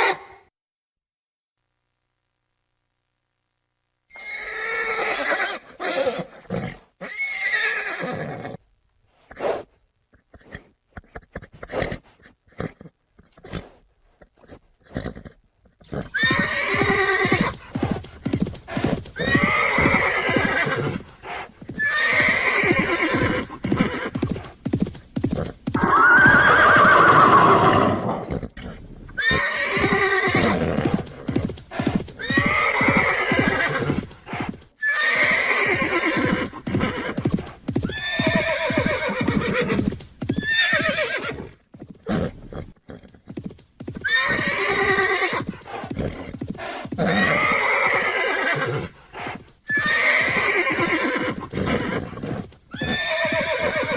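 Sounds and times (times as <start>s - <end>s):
horses whinnying: 4.1s - 8.6s, 14.9s - 24.5s, 25.3s - 43.1s, 44.0s - 53.9s
clatter of hooves: 14.2s - 21.8s.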